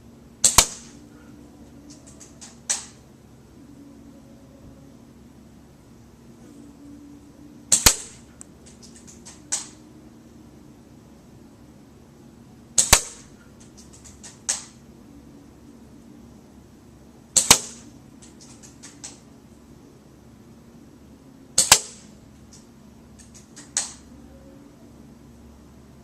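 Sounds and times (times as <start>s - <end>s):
airsoft rifle shots: 0.4s - 1.0s, 7.7s - 8.2s, 12.8s - 13.3s, 17.4s - 17.9s, 21.6s - 22.1s.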